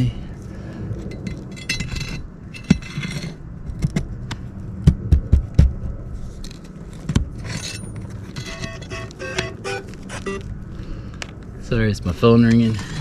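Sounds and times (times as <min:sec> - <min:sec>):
metal scraping on shingles: 0:01.1 - 0:03.9, 0:06.2 - 0:10.4, 0:12.4 - 0:13.0.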